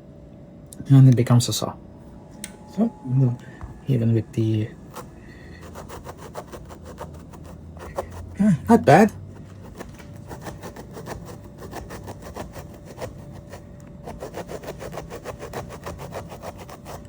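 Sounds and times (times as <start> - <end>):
small saw rasping: 4.8 - 17.0.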